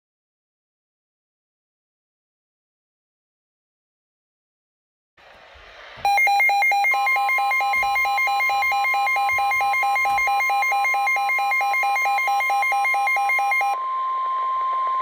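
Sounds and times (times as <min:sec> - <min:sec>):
faint radio hiss: 0:05.2 - 0:10.2
steady warning alarm tone: 0:06.0 - 0:15.0
fast electronic beeping: 0:06.1 - 0:13.8.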